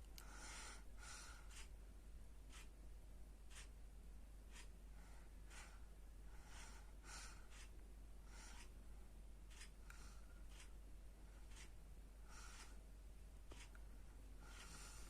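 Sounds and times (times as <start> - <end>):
low steady hum: 0.0 - 15.0
baby breathing with light snores: 5.0 - 7.7, 14.4 - 15.0.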